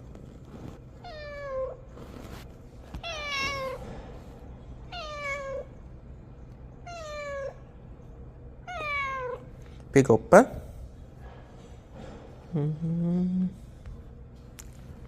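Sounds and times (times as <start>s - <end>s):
cat meowing: 3.0s - 3.8s, 4.9s - 5.7s, 6.8s - 7.6s, 8.6s - 9.5s.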